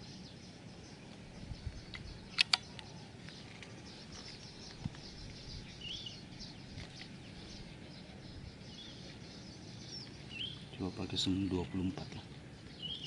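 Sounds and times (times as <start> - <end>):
birds and insects chirping: 0.0 - 13.0
sharp clicks: 1.9 - 2.9.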